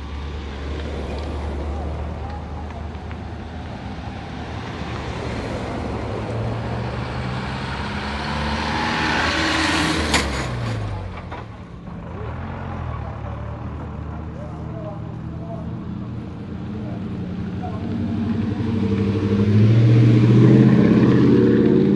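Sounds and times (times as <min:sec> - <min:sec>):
large vehicle engine running: 0:10.1 - 0:21.9.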